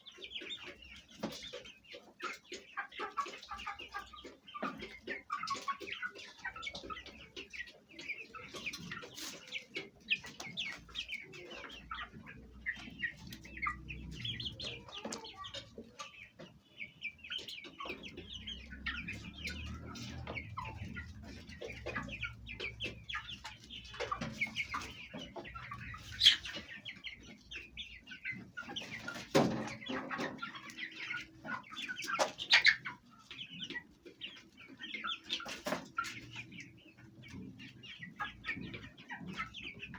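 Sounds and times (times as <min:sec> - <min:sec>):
chicks peeping: 0:00.0 - 0:39.9
hens clucking: 0:00.0 - 0:39.9.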